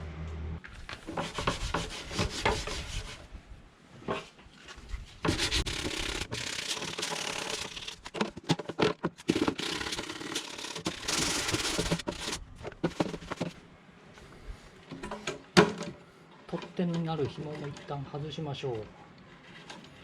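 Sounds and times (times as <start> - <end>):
sandpaper scraping on wood: 1.1 - 3.2, 5.3 - 8.0, 9.6 - 12.4.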